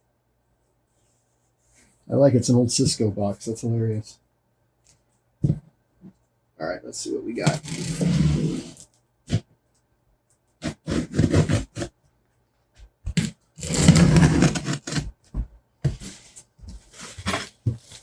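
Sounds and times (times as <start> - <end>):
cardboard scraping and rustling: 7.4 - 9.4, 10.6 - 11.9, 13.1 - 15.3, 15.9 - 18.0.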